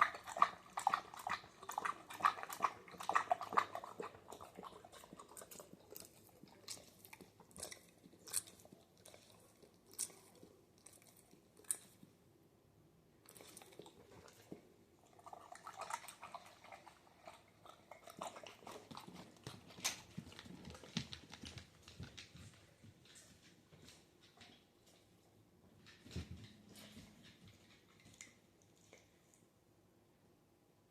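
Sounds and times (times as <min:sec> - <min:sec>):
dog slurping and chewing: 0:00.0 - 0:12.1, 0:13.2 - 0:23.3.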